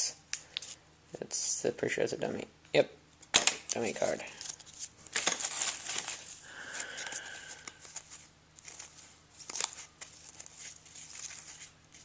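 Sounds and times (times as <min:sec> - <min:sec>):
foil card pack crinkling: 0:04.0 - 0:12.0.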